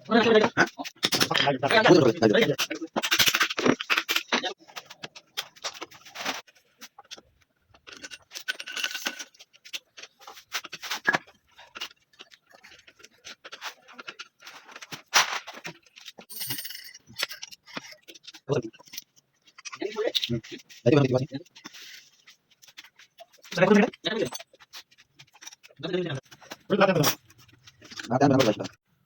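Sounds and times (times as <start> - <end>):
hand tools and metal parts clinking: 0.8 - 7.2, 7.8 - 11.9, 14.4 - 19.8.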